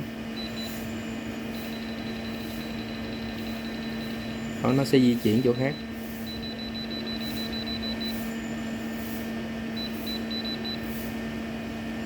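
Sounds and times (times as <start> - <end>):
pulsing high-pitched tone: 0.0 - 9.0
electrical hum: 0.0 - 12.0.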